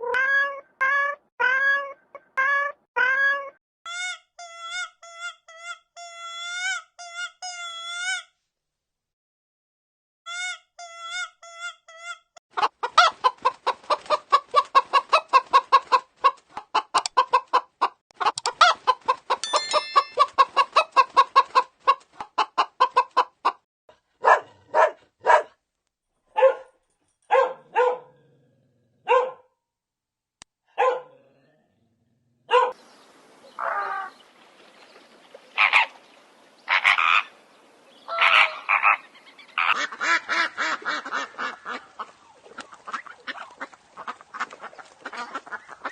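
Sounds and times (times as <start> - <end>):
chickens clucking: 11.2 - 23.6, 35.3 - 36.0, 38.0 - 45.9.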